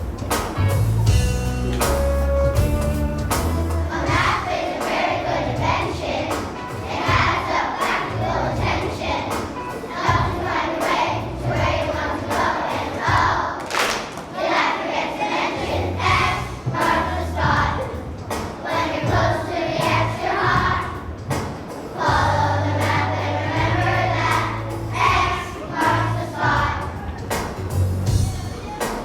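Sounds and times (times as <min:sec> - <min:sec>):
low bass notes: 0:00.0 - 0:04.4, 0:22.2 - 0:25.2, 0:27.6 - 0:28.6
children's choir singing: 0:00.0 - 0:29.0.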